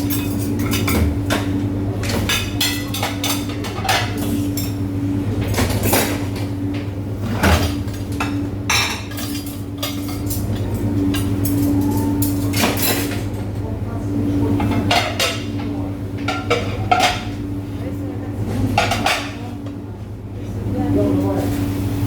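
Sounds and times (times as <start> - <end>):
dishes and cutlery clattering: 0.0 - 4.8, 7.4 - 13.3, 14.6 - 17.4, 18.7 - 19.5
low machine hum: 0.0 - 22.0.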